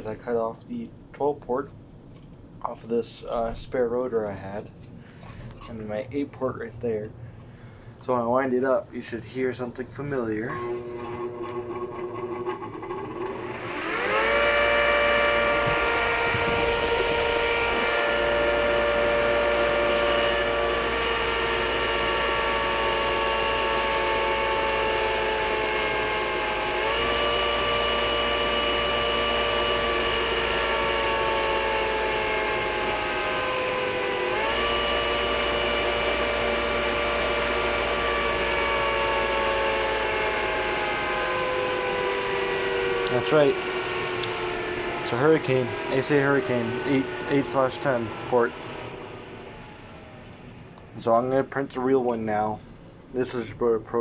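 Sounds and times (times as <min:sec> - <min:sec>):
two-tone siren wailing: 0:10.5 - 0:12.2, 0:13.5 - 0:50.7.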